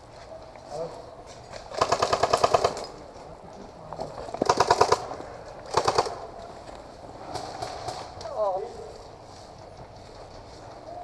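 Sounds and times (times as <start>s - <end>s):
airsoft gun rapid fire: 1.7s - 2.9s, 4.4s - 6.3s.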